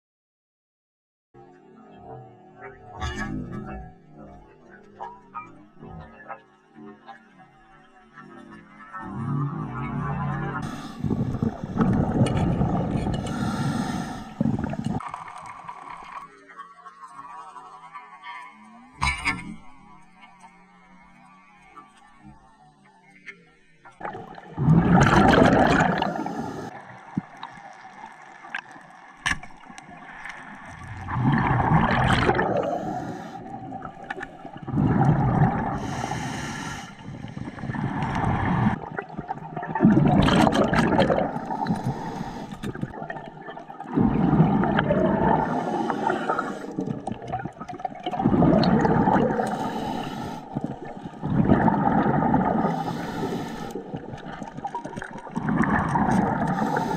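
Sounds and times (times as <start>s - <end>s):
regulator bubbling exhaust: 42.6s - 49.8s.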